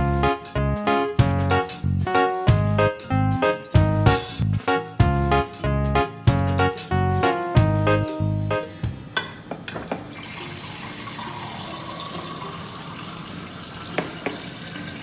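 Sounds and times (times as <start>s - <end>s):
water running from dispenser: 10.0s - 15.0s.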